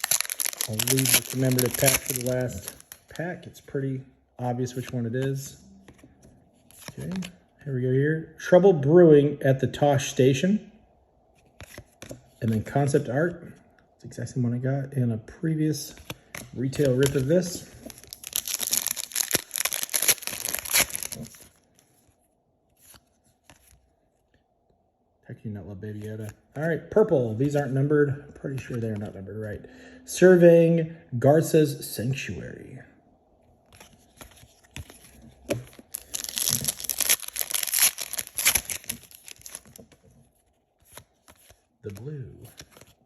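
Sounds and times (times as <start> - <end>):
wrapper tearing and crinkling: 0.0 - 3.1, 16.8 - 21.6, 35.7 - 39.8.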